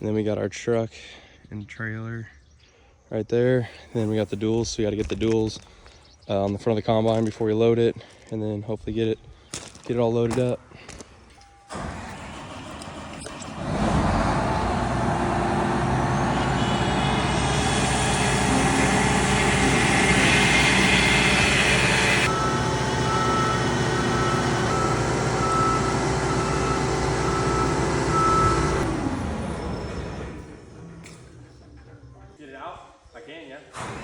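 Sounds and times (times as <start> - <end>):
back-up alarm beeping: 11.3 - 11.8, 19.2 - 28.9
diesel engine running: 11.7 - 32.2.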